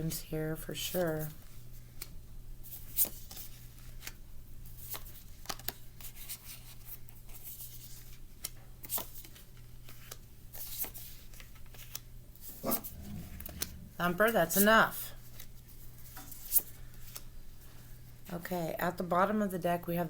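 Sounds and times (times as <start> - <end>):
steady low hum: 12.5 - 15.2.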